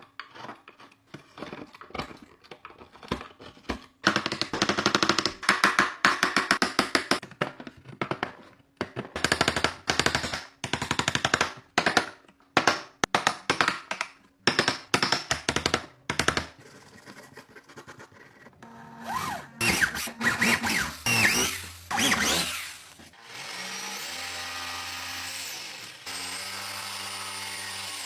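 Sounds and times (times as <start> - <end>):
power tool whining: 18.7 - 28.0.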